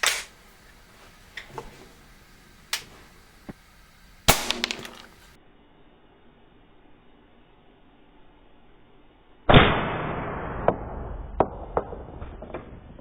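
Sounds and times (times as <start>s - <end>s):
air rifle shots: 0.0s - 0.4s, 4.2s - 5.4s
pellets hitting clay: 4.2s - 5.4s.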